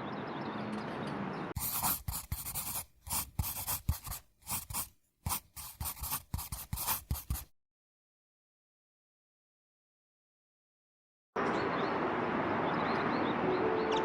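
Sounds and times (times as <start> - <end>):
scratching and rubbing: 1.6 - 7.5.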